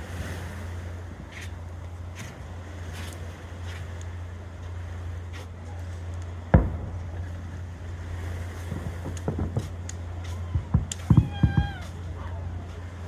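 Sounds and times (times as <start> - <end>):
low rumble: 0.0 - 13.0
fireworks booming: 6.4 - 12.2.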